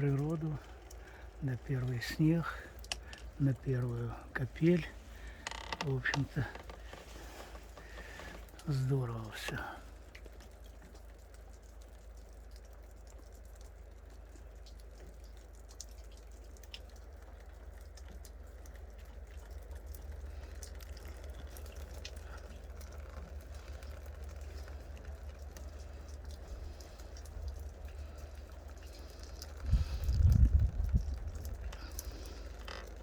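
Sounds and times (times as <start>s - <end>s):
steady low rumble: 0.0s - 10.2s, 17.8s - 33.0s
meltwater dripping off roof: 0.0s - 33.0s.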